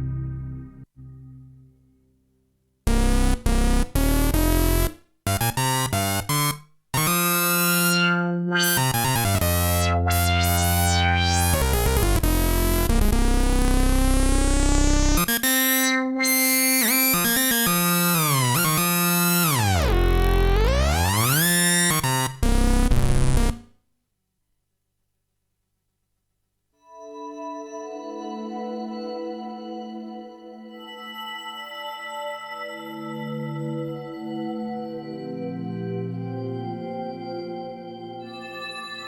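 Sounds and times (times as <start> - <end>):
buzzy synthesizer notes and chords: 2.9 - 23.7.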